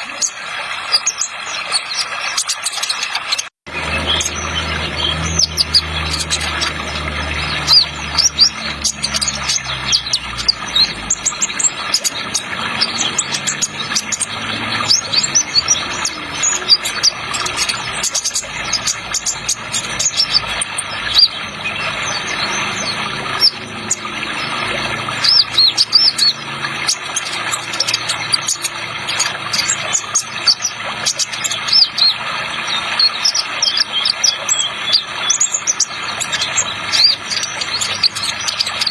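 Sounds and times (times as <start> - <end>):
bird singing high chirps and trills: 0.0 - 38.9
running water: 0.0 - 38.9.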